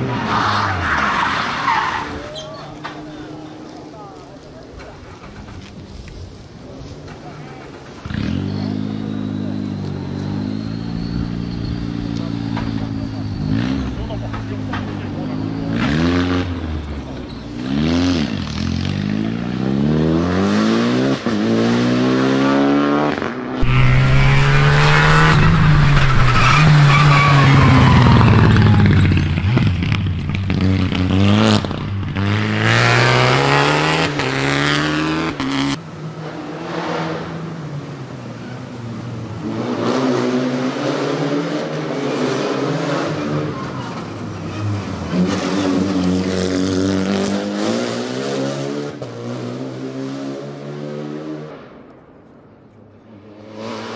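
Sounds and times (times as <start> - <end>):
rally car engine revving past: 17.6 - 37.5, 39.4 - 51.7.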